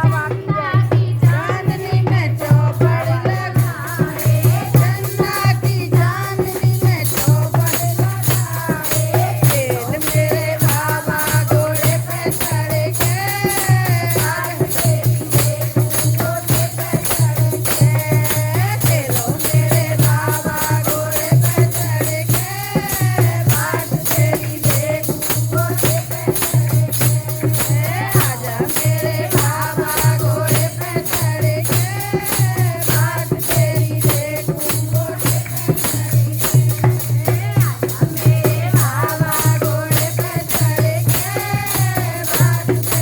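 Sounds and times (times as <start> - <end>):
devotional song singing: 0.0 - 43.0
fast even percussion: 0.0 - 43.0
shaker-like jingle: 0.0 - 43.0.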